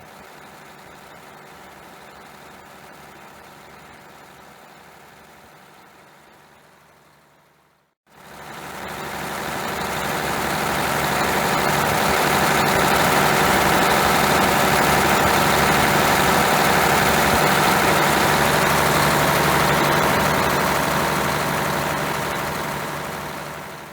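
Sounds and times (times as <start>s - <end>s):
diesel engine idling with knock: 0.1s - 23.9s.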